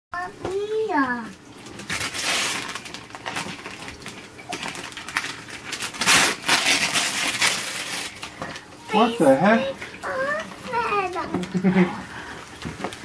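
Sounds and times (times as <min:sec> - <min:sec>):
paper crinkling and ripping: 0:01.6 - 0:09.4.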